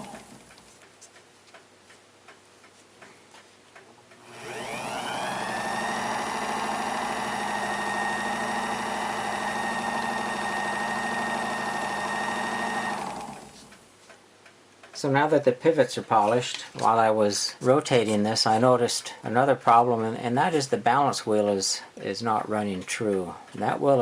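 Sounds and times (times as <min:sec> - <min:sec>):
lathe motor whining: 0:00.0 - 0:00.6, 0:04.2 - 0:13.7.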